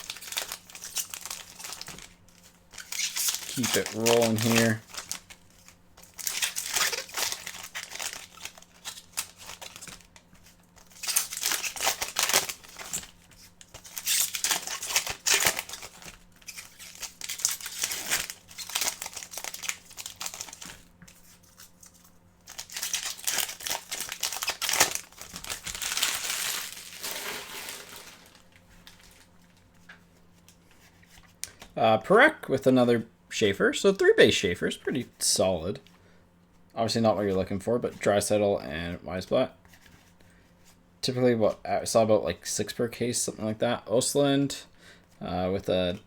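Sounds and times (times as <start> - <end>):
wrappers torn and crinkled: 0.0 - 10.2, 10.8 - 20.9, 21.5 - 29.6.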